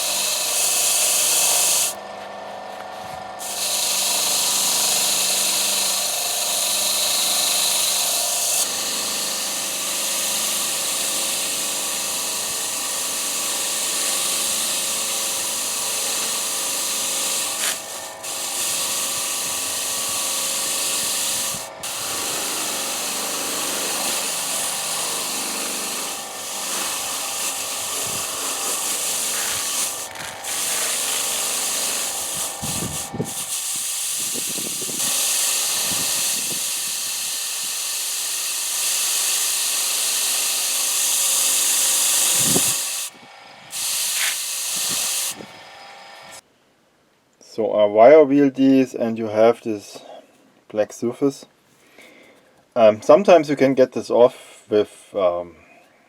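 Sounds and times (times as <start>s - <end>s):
motor whine: 0.0s - 46.4s
wire wheel scraping metal: 13.5s - 37.4s.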